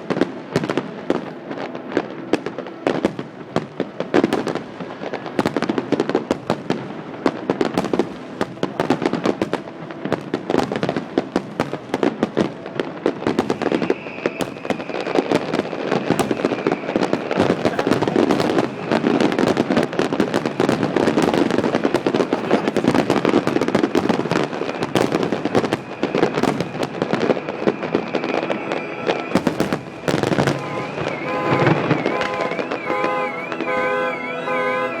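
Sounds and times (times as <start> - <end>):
fireworks bursting and crackling: 0.0 - 35.0
high whistle: 13.5 - 15.2, 25.6 - 35.0
music with sustained notes: 27.0 - 35.0.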